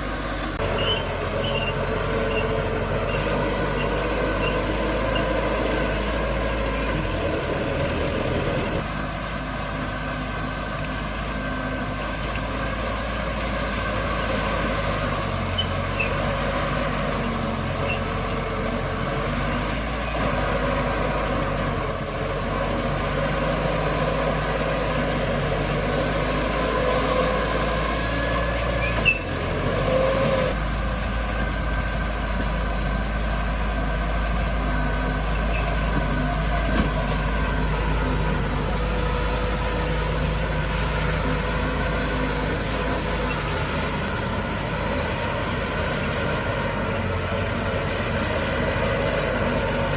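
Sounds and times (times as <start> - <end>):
diesel machinery running: 0.0 - 49.9
brief squeal: 0.6 - 5.8, 15.4 - 16.3, 17.2 - 18.3, 25.7 - 31.0, 34.0 - 37.5.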